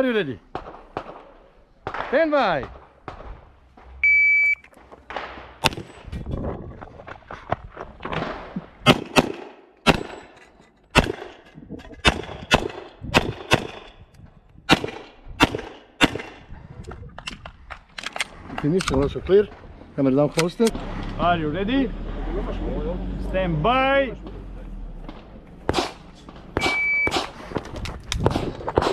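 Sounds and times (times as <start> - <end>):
pistol shots: 0.5 - 3.3, 5.1 - 6.0, 8.4 - 10.3, 11.0 - 11.4, 12.0 - 13.9, 14.7 - 16.5, 25.7 - 27.6, 28.2 - 28.9
shot timer beep: 4.0 - 4.6, 26.6 - 27.2.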